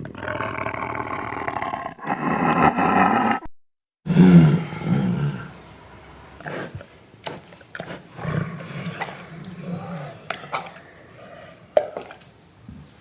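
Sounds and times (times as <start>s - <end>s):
large animal growling low: 4.1s - 12.2s.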